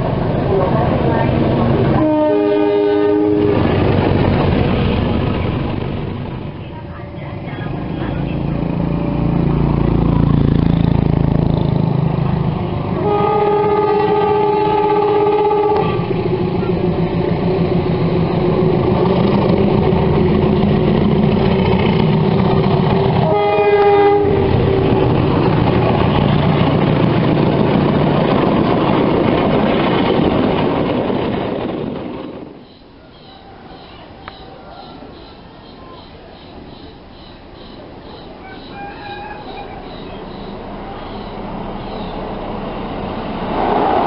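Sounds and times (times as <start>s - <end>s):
train running noise: 0.0s - 44.0s
locomotive horn blasts: 2.0s - 3.6s, 13.0s - 16.0s, 23.2s - 24.8s, 38.4s - 39.9s.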